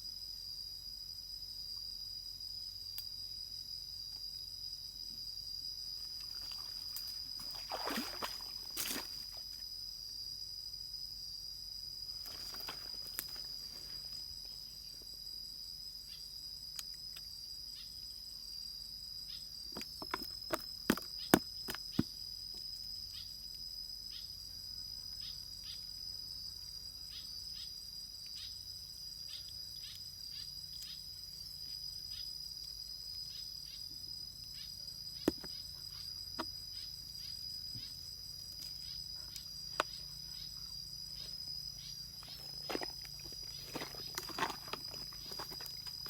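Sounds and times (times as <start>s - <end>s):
high-pitched insect drone: 33.3s - 46.0s.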